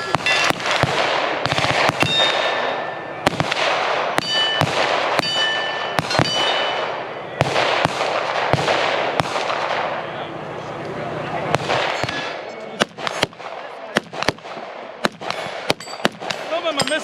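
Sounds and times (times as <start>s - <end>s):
high metallic ping: 0.0s - 0.6s, 2.0s - 3.2s, 4.2s - 7.1s, 15.8s - 16.2s
gunshots: 0.0s - 10.2s, 11.5s - 17.0s.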